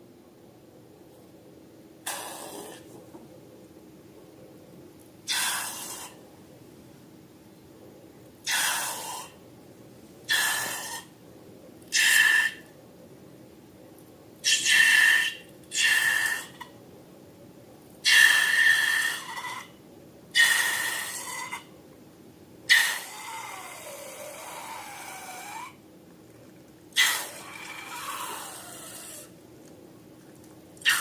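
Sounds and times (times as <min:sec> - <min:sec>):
air hissing out of balloon: 0:02.1 - 0:02.8.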